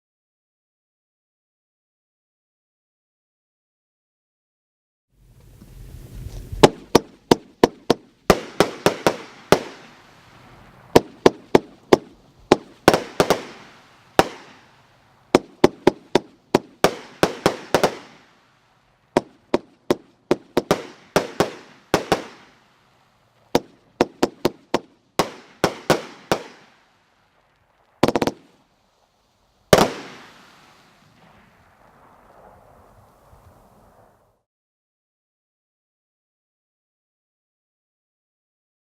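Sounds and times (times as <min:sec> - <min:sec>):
firework cake sharp bangs: 0:06.4 - 0:18.4, 0:19.1 - 0:22.7, 0:23.4 - 0:26.9, 0:27.9 - 0:28.7, 0:29.7 - 0:33.4.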